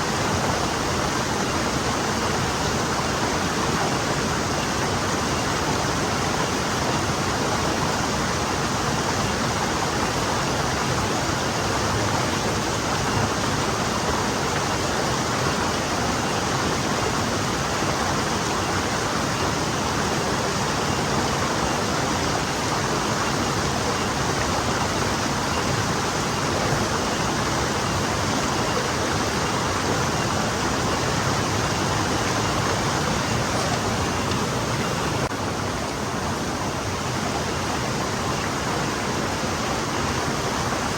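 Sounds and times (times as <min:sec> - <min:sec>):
stream flowing: 0:00.0 - 0:40.9.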